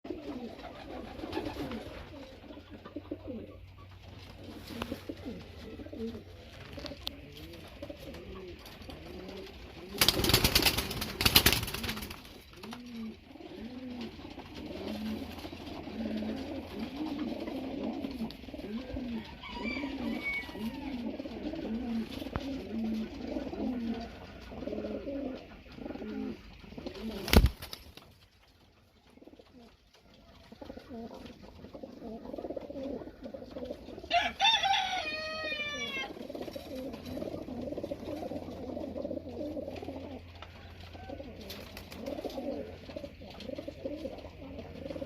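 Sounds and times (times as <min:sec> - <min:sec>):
pigeons cooing: 0:00.1 - 0:27.7, 0:29.0 - 0:45.0.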